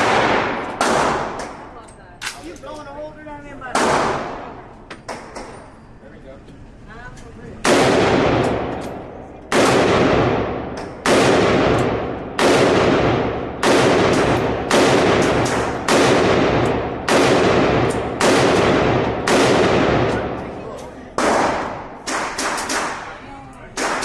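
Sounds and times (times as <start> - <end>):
gunshots: 0.0 - 1.7, 3.7 - 5.5, 7.6 - 20.5, 21.2 - 23.2, 23.8 - 24.0.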